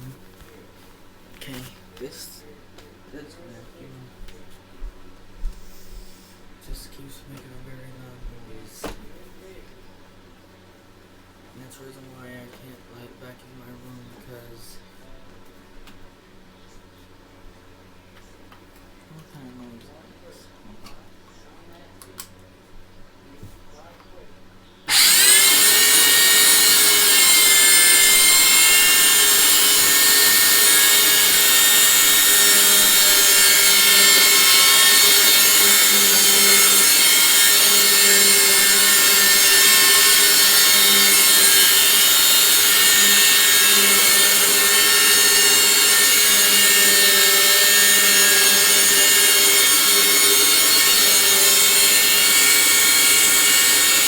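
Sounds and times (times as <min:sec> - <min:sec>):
vacuum cleaner with high-pitched whine: 0:24.9 - 0:54.0.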